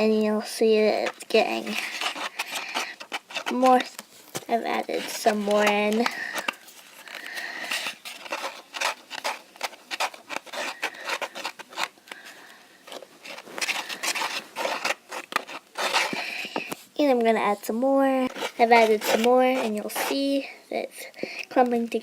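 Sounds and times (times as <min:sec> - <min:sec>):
utensil scraping bowl: 0:00.8 - 0:16.8, 0:18.2 - 0:20.4.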